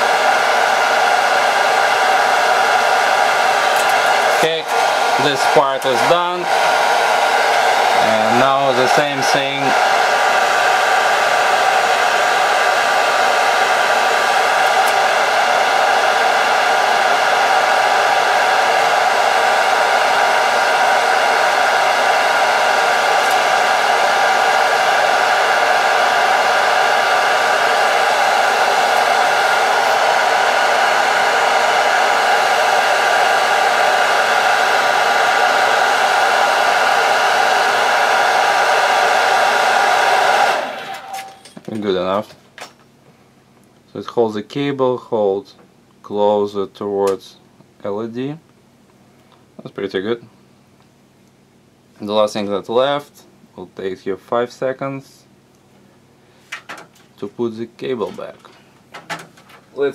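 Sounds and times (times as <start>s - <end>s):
hot-air blower running: 0.0s - 41.8s.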